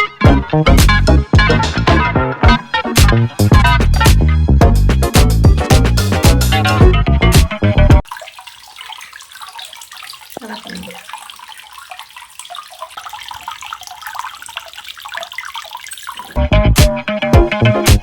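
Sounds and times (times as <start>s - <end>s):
music: 0.0s - 8.0s, 16.4s - 18.0s
water trickling over stones: 8.0s - 16.5s.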